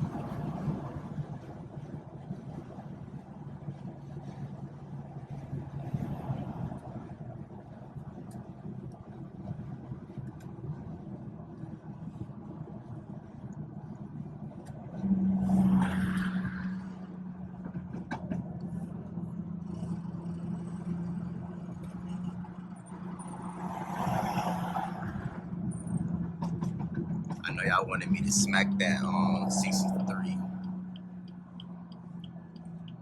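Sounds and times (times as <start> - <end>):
car engine drone: 0.0 - 33.0
road noise: 0.0 - 33.0
rush of noise: 27.4 - 30.7.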